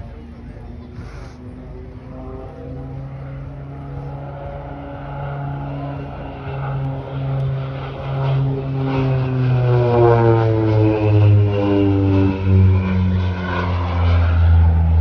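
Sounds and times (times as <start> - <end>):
turboprop aircraft passing: 0.0 - 15.0.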